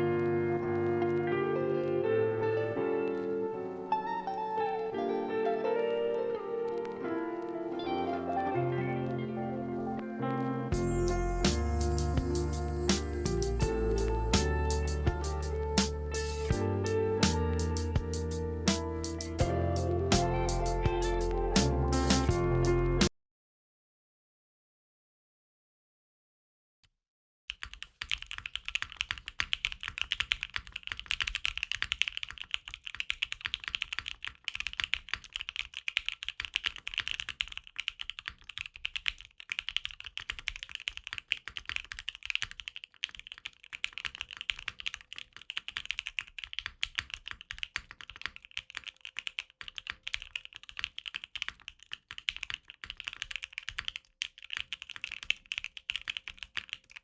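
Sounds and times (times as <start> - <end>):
mechanical keyboard typing: 27.5 - 57.0.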